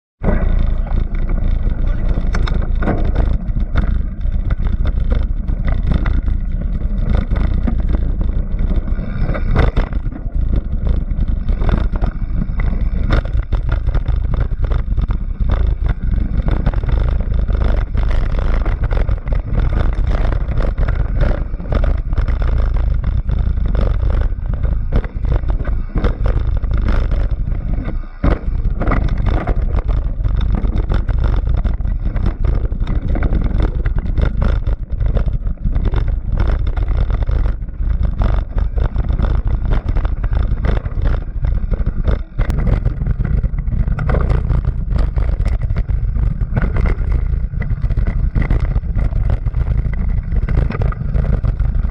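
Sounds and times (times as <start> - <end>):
vehicle jolts and knocks: 0.2 - 51.9
vehicle rumbling: 0.2 - 51.9
wind buffeting microphone: 0.2 - 51.9.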